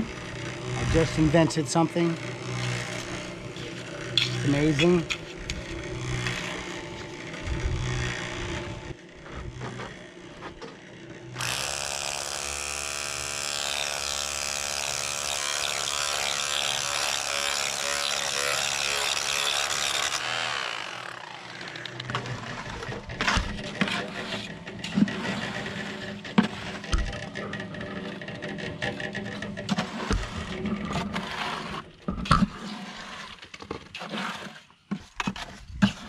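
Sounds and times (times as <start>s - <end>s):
power tool motor running: 0.0s - 23.6s
knocks and scrapes: 0.7s - 11.0s, 21.6s - 36.0s.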